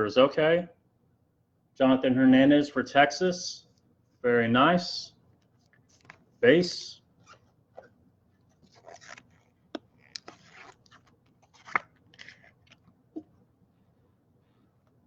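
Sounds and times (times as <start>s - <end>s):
trading cards rustling and scraping: 5.4s - 6.4s, 7.2s - 13.0s.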